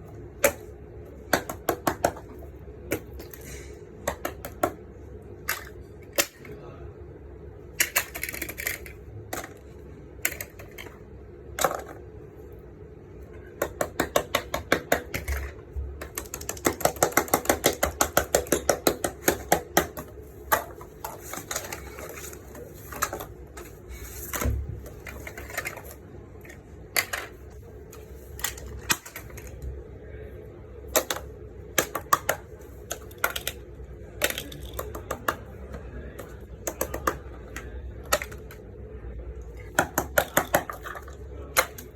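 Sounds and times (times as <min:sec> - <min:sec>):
faint steady hum: 0:00.0 - 0:41.9
plastic toys clicking: 0:05.4 - 0:06.6, 0:07.8 - 0:11.0, 0:13.6 - 0:23.4, 0:24.3 - 0:27.4, 0:28.4 - 0:29.7, 0:30.9 - 0:38.7, 0:39.6 - 0:41.9.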